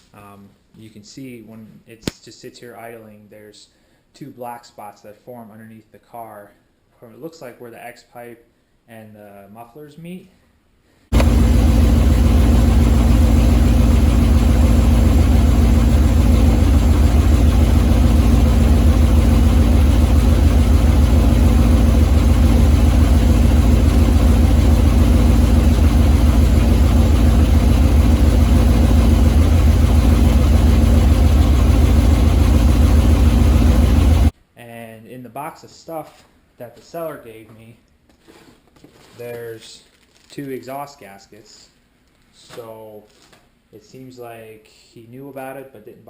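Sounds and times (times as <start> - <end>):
car engine idling: 11.1 - 34.3.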